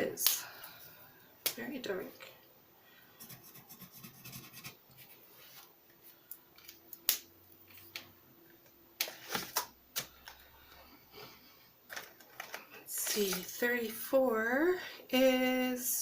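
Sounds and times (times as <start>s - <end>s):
art tool scratching on paper: 3.2s - 4.8s.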